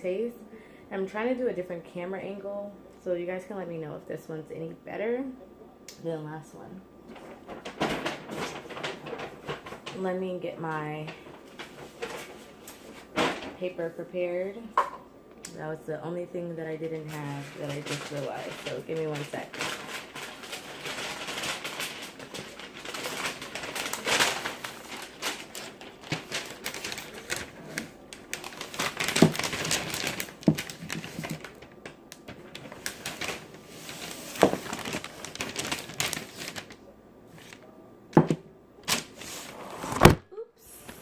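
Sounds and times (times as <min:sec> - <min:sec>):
paper rustling and crinkling: 0:07.1 - 0:10.0, 0:10.9 - 0:13.6, 0:16.9 - 0:37.7, 0:38.8 - 0:40.2.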